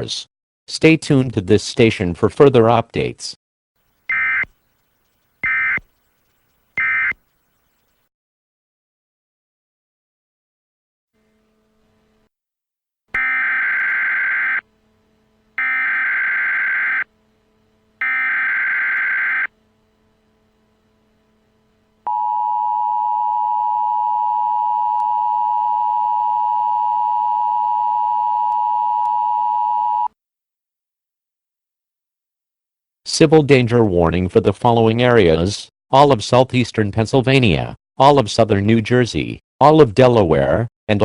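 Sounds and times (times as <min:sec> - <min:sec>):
short buzzing data bursts: 0:04.1 - 0:06.2, 0:06.8 - 0:07.8, 0:13.2 - 0:14.7, 0:15.6 - 0:17.1, 0:18.0 - 0:19.5
two-tone attention signal: 0:06.8 - 0:07.2, 0:13.2 - 0:14.6, 0:15.6 - 0:17.1, 0:18.0 - 0:19.5.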